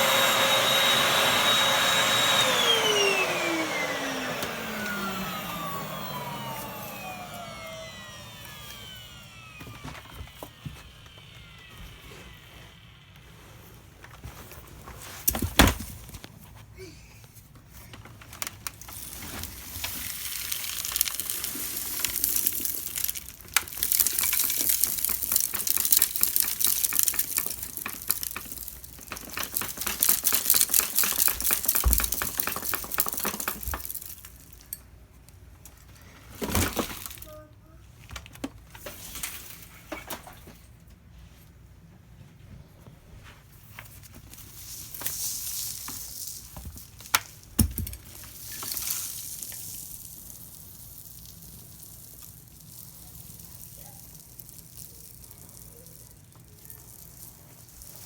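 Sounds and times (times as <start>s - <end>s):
dry dirt rattling and crackling: 18.0s - 34.6s.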